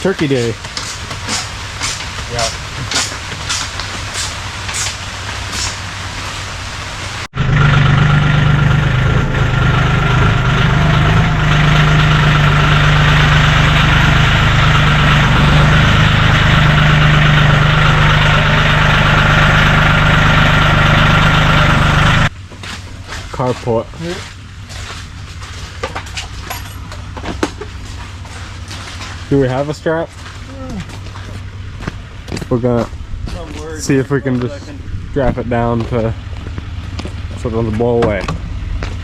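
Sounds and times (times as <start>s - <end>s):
hiss: 0.3s - 7.3s
engine whine: 2.4s - 23.0s
vehicle engine idling: 7.3s - 39.0s.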